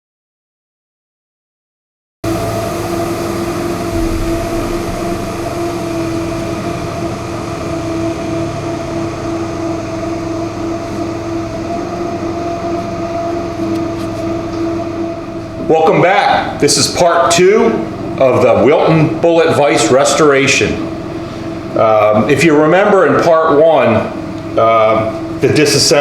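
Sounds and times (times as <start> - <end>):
machine droning: 2.3 - 26.0.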